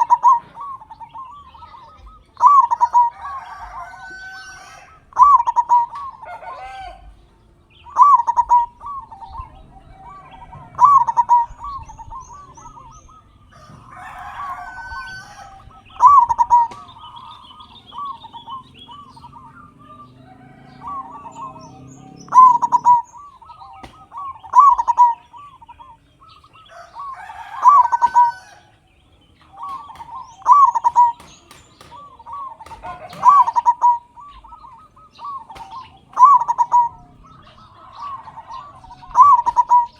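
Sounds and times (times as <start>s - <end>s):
birds chirping: 0.0s - 39.9s
dove cooing: 0.0s - 39.9s
harsh bird calls: 0.0s - 39.9s.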